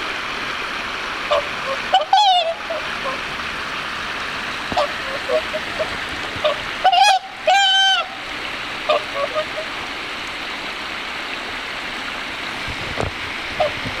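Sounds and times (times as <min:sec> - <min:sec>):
swans honking: 0:01.2 - 0:10.6, 0:12.5 - 0:14.0.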